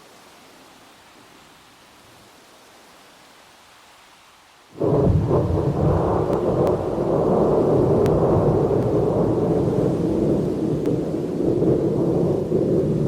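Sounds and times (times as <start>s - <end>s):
thunder rumbling: 4.8s - 13.0s.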